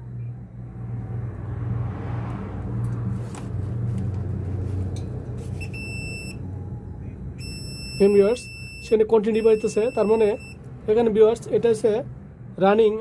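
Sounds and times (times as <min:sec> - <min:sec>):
multimeter continuity beep: 0:05.6 - 0:06.4, 0:07.4 - 0:10.6.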